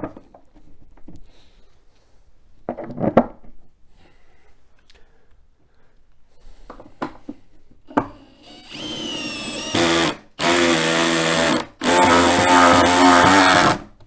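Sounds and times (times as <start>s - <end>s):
power drill driving a screw: 8.0s - 13.9s.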